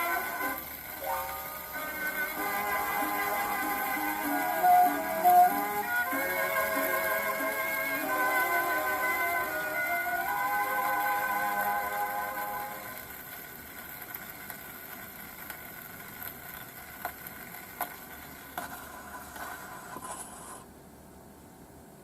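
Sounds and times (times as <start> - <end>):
gramophone music: 0.0 - 14.0
record surface hiss: 0.0 - 22.0
sharp record pops: 13.0 - 20.1.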